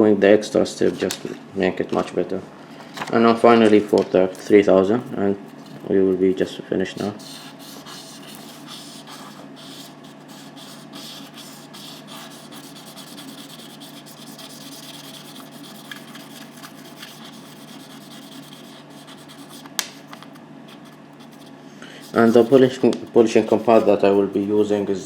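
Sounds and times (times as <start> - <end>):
stone scratching on sandpaper: 7.1 - 19.7, 22.0 - 22.8, 23.4 - 24.8.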